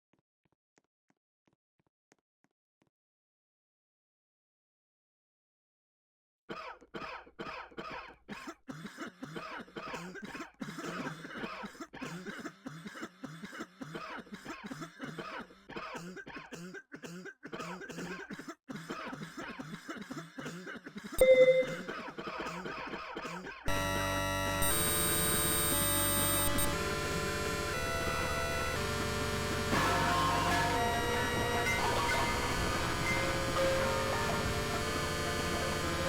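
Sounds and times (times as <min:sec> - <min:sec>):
person coughing: 0:06.5 - 0:23.7.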